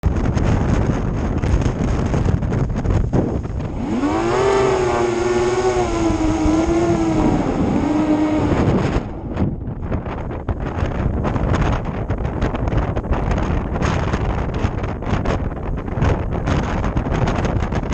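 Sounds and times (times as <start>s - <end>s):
wind buffeting microphone: 0.0s - 17.9s
drone motors whining: 3.6s - 9.6s.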